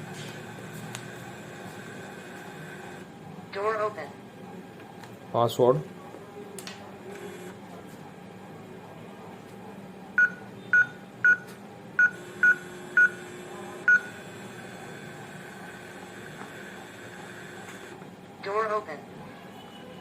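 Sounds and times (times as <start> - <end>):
keypad short beeps: 10.2 - 13.1.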